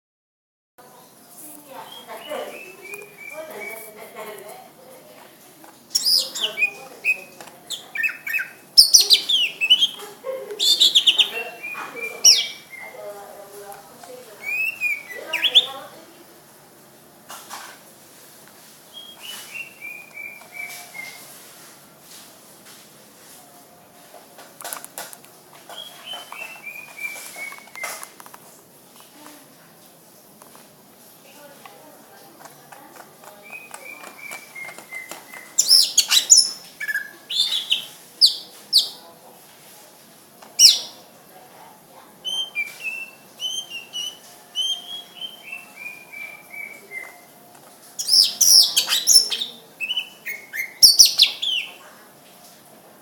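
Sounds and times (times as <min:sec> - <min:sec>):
bird singing whistled phrases: 0:01.8 - 0:03.8, 0:05.9 - 0:10.0, 0:10.6 - 0:13.0, 0:14.4 - 0:15.8, 0:18.9 - 0:21.2, 0:25.8 - 0:28.0, 0:33.5 - 0:39.0, 0:40.6 - 0:41.0, 0:42.2 - 0:47.2, 0:48.0 - 0:51.7.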